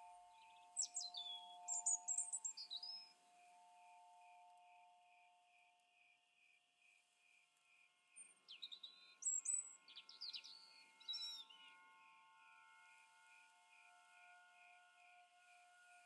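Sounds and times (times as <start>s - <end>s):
songbird chirping: 0.3s - 3.2s, 8.2s - 11.9s.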